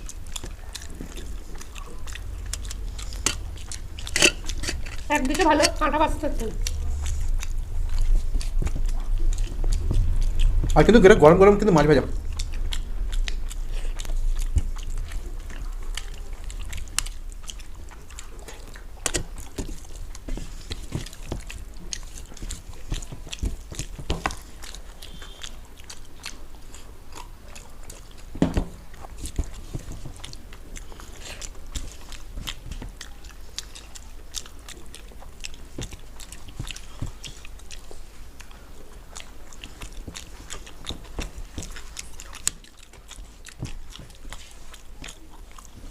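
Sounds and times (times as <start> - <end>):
chewing and biting food: 0.0 - 45.9.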